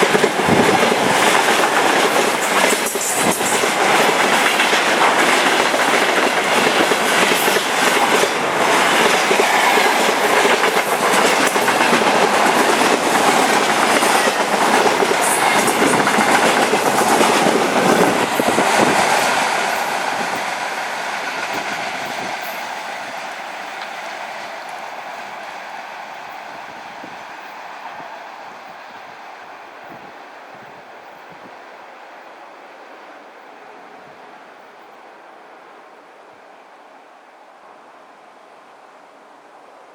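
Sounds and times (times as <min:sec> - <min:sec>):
freight train wheels clattering: 0:00.0 - 0:25.6.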